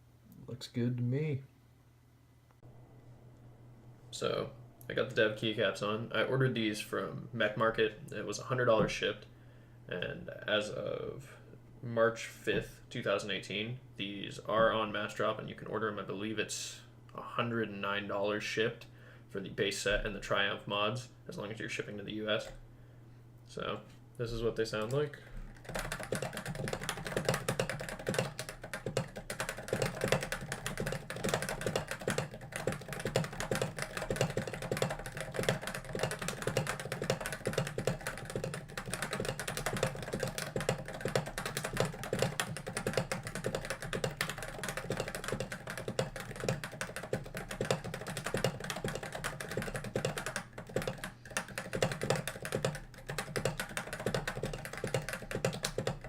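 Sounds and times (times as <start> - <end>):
fast keyboard typing: 25.5 - 56.0.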